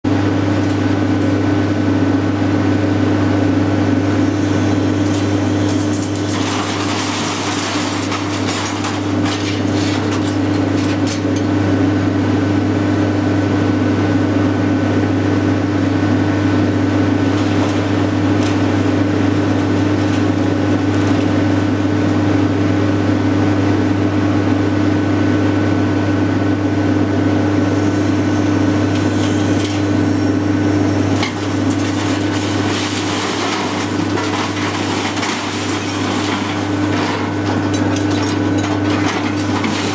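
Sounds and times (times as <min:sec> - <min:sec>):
machine hum with high whine: 0:00.0 - 0:39.9
scrap metal clattering: 0:05.1 - 0:11.6, 0:31.1 - 0:39.9.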